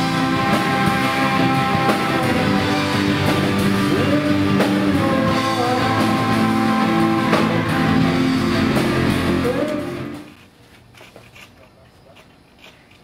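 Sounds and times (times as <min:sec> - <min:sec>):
rock music with guitar and drums: 0:00.0 - 0:10.3.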